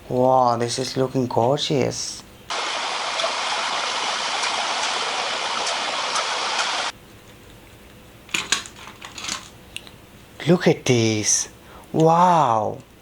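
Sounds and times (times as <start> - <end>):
steady hiss like rushing water: 2.5 - 6.9.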